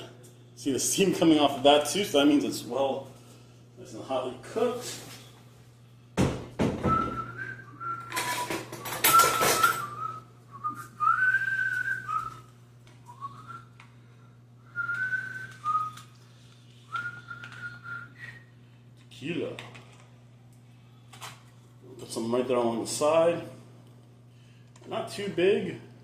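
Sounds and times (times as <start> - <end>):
person whistling a tune: 6.8 - 12.5, 13.1 - 13.7, 14.6 - 16.1, 16.9 - 18.5.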